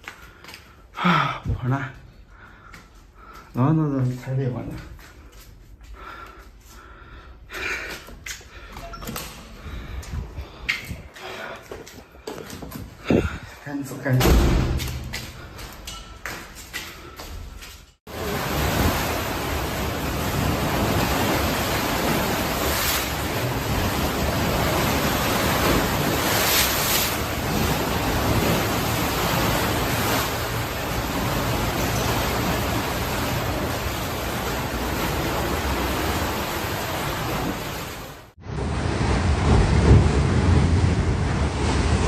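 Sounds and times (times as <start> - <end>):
wind buffeting microphone: 12.8 - 13.5
deep rumbling rush: 38.4 - 42.0.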